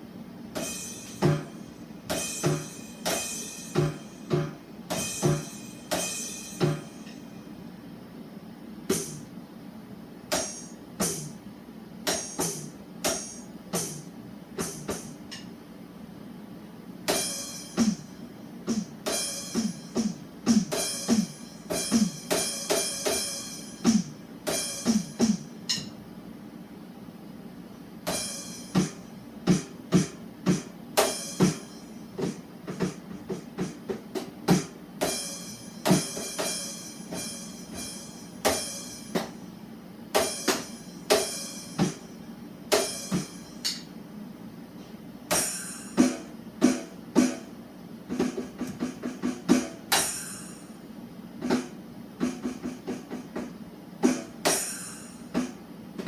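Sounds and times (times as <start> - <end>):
drum hits: 0.6 - 7.0, 18.7 - 25.5, 28.1 - 39.4, 42.7 - 43.6.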